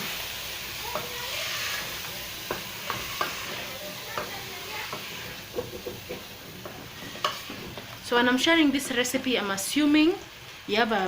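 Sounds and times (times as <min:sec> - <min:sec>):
stew sizzling: 0:00.0 - 0:11.0
utensil knocking against pot: 0:04.1 - 0:07.4.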